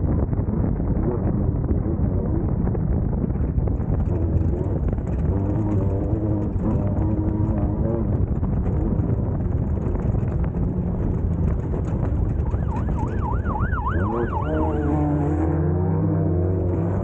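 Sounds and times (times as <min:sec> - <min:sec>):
race car engine running hard: 0:00.2 - 0:17.0
wavering siren: 0:12.3 - 0:16.4.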